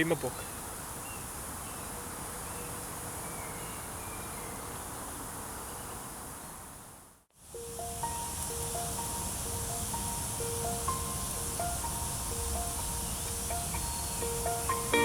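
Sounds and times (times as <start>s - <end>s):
insects buzzing: 7.4s - 15.0s.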